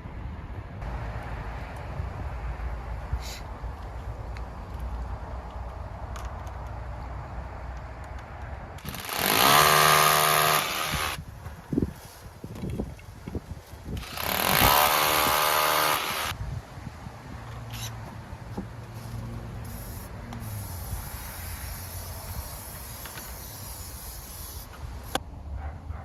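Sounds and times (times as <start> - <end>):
power tool whining: 8.8 - 11.2, 14.0 - 16.4.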